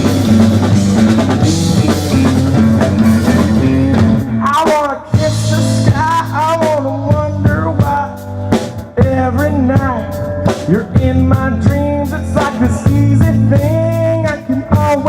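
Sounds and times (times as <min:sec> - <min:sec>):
bass guitar: 0:00.0 - 0:15.0
drum kit: 0:00.0 - 0:15.0
electric guitar: 0:00.0 - 0:15.0.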